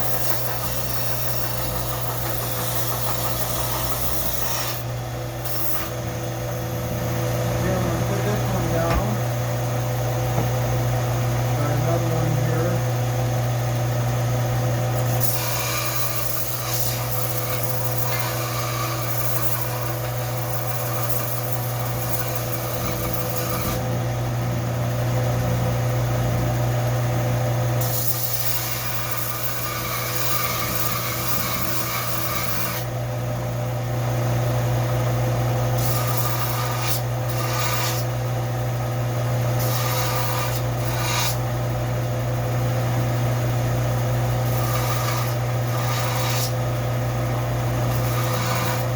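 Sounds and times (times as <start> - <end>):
blade scratching on abrasive: 0.0 - 6.0, 15.0 - 23.8, 27.8 - 32.9, 35.8 - 38.1, 39.6 - 41.5, 44.4 - 46.6, 47.8 - 48.9
steady low hum: 0.0 - 48.9.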